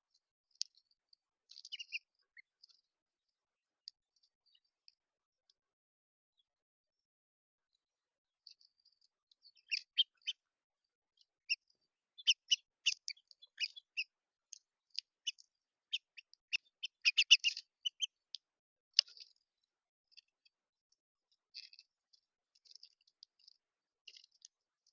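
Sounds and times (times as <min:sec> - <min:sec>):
small birds chirping: 0:00.0 - 0:02.9, 0:03.8 - 0:05.0, 0:08.4 - 0:10.4, 0:11.1 - 0:19.5, 0:21.5 - 0:24.9.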